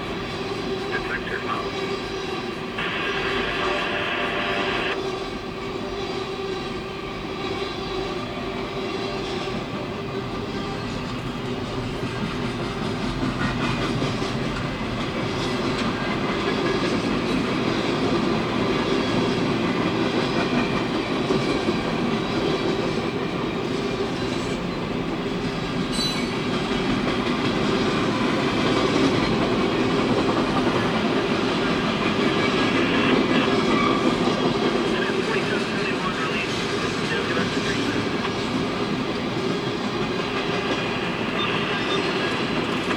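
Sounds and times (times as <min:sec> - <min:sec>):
train wheels rumbling and clacking: 0:04.9 - 0:42.9.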